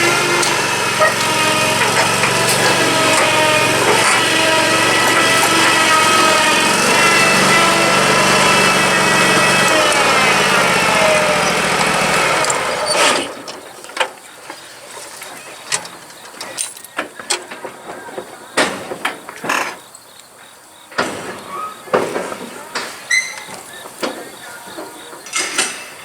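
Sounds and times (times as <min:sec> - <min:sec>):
mower engine running: 0:00.0 - 0:14.1.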